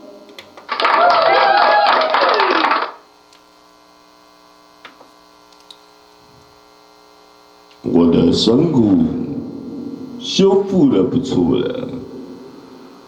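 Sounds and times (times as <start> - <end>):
electrical hum: 0.0 - 13.0
canned crowd sound effect: 0.7 - 3.0.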